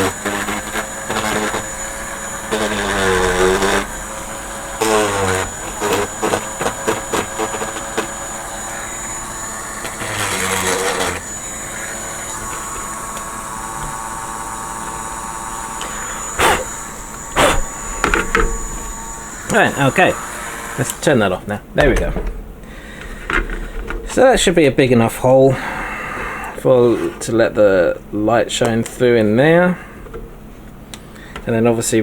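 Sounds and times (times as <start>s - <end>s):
drill boring through plastic: 0.0s - 21.6s, 22.7s - 24.4s
sharp knocks: 21.8s - 24.2s.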